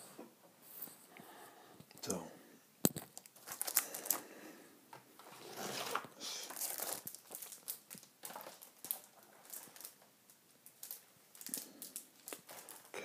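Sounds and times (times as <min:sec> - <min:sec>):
packaging crinkling and rustling: 0:02.9 - 0:04.3, 0:05.2 - 0:13.0.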